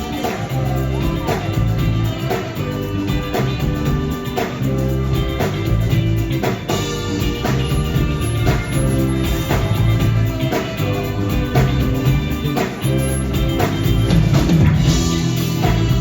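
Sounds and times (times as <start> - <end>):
bass guitar: 0.0 - 16.0
drum kit steady beat: 0.0 - 16.0
electric guitar lines: 0.0 - 16.0
highlife band playing: 0.0 - 16.0.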